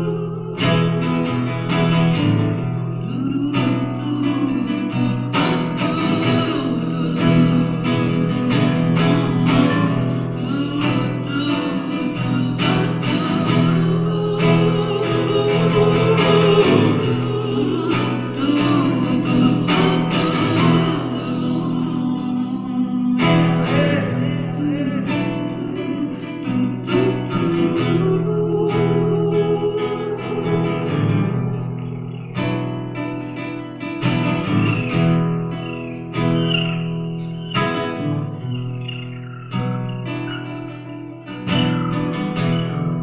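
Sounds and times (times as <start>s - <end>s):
acoustic guitars plucked and strummed: 0.0s - 43.0s
wavering melody line: 34.4s - 43.0s.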